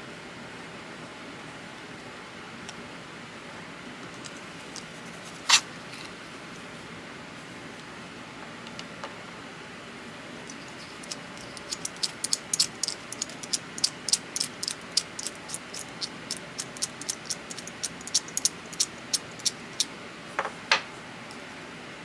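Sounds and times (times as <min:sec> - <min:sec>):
pipe wrench clicks and taps: 0:10.5 - 0:19.9.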